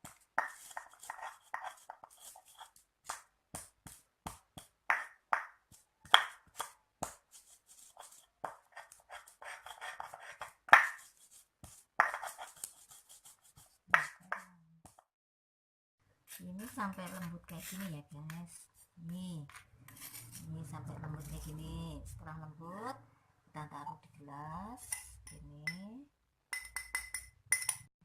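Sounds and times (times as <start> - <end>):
crushing scrapes: 19.5 - 20.5.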